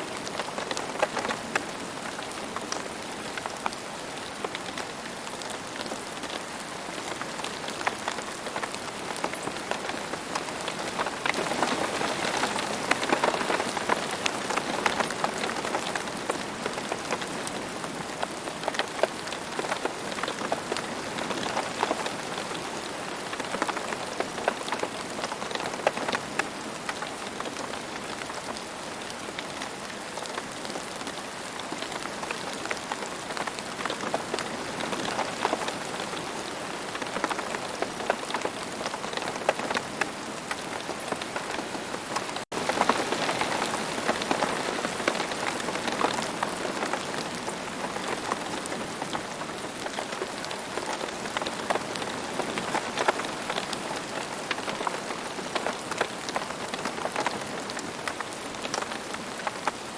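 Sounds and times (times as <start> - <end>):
rain falling on ground: 0.0 - 59.9.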